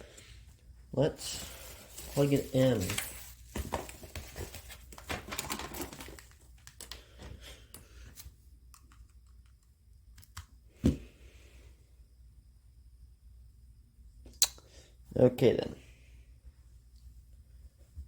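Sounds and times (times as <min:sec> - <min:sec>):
cable handling rustling and clicks: 0:01.2 - 0:10.5.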